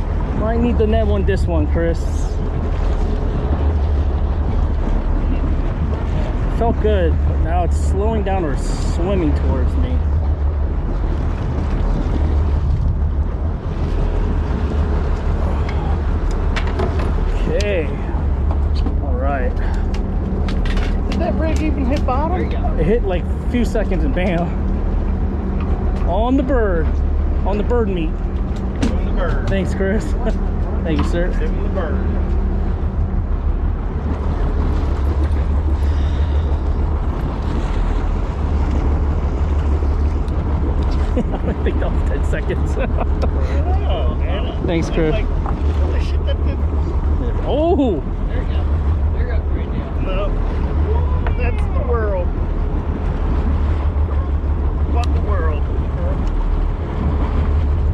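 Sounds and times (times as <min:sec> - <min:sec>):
low rumble aboard boat: 0:00.0 - 0:57.9
wind buffeting microphone: 0:00.0 - 0:57.9.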